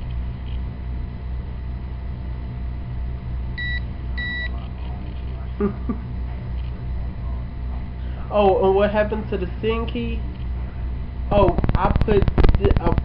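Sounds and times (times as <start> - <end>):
steady low rumble: 0.0 - 13.0
short electronic phone beeps: 3.6 - 4.5.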